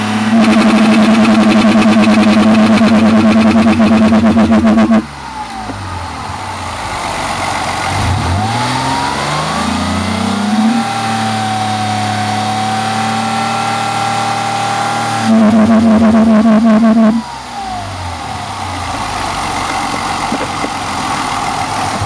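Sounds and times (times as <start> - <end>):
loud rapid pulsing: 0.0 - 5.7, 8.0 - 18.0
car engine running: 0.0 - 22.0.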